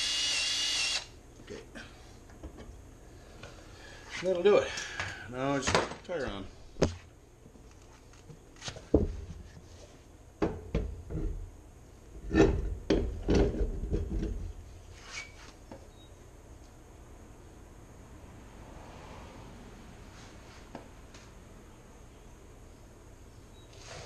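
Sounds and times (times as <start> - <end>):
knocks and thuds of mower wheel: 12.2 - 14.6.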